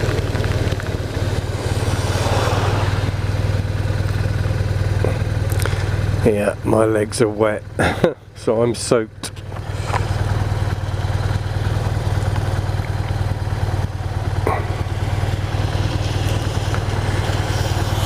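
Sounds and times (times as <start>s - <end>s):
rush of noise: 0.0s - 4.6s
motorcycle engine humming: 0.0s - 18.0s.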